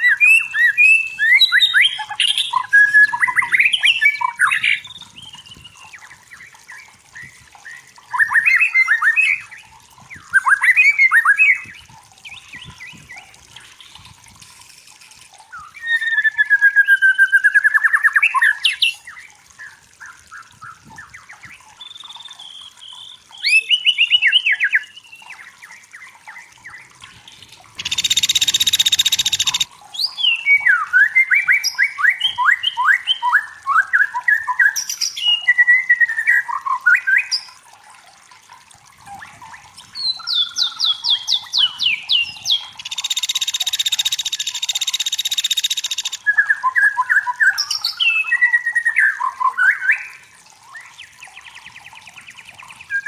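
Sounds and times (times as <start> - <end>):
bird singing whistles and trills: 0.0 - 14.0, 15.5 - 37.6, 39.1 - 53.0.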